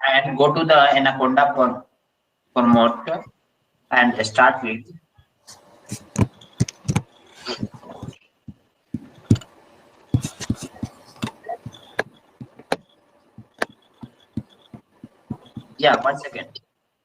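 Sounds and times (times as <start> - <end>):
keyboard typing clicks: 6.1 - 8.1, 10.2 - 16.2
low thuds: 10.1 - 16.0.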